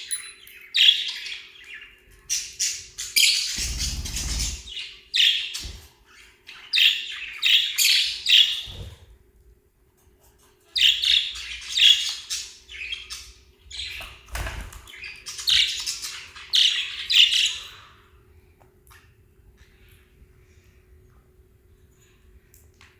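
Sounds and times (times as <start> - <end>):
parrots squawking: 2.6 - 5.6.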